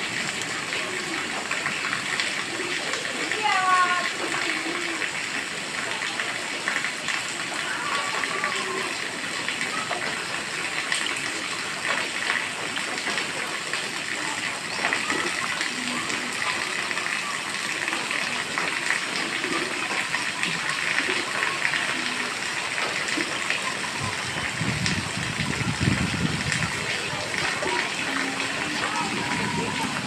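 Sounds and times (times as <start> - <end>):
heavy rain: 0.0 - 30.0.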